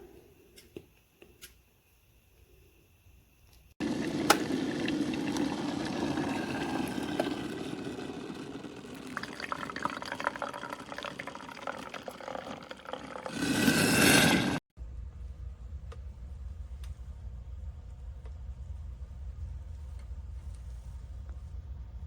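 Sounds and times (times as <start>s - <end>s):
water running and splashing: 3.8s - 14.6s.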